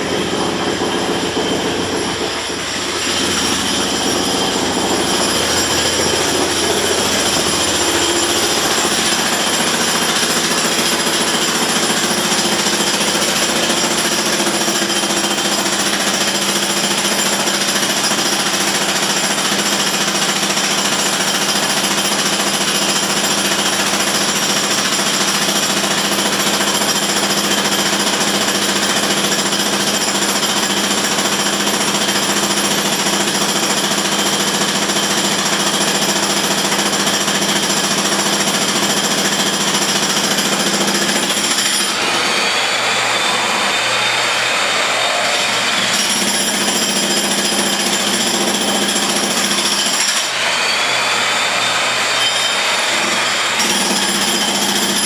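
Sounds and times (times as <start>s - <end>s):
power tool whine: 0.0s - 14.0s, 37.4s - 55.0s
jackhammer hammering: 0.0s - 55.0s.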